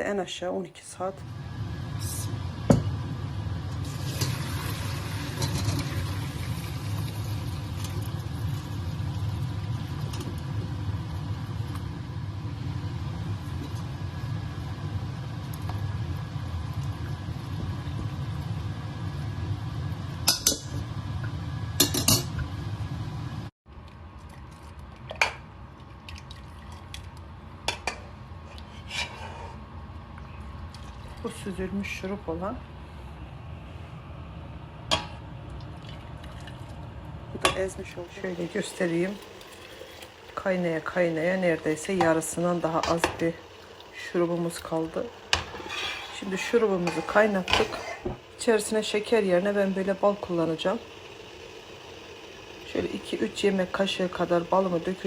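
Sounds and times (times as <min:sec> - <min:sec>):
pots and utensils clinking: 0:05.3 - 0:06.0, 0:21.8 - 0:22.4
liquid pouring into metal pot: 0:38.2 - 0:40.4.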